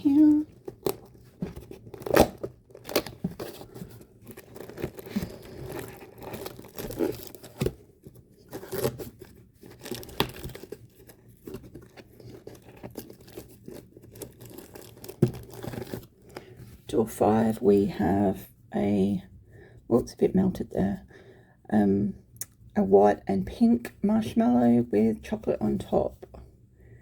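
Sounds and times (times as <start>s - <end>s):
packaging crinkling and scraping: 0.0s - 16.7s
cardboard tearing: 0.1s - 16.1s.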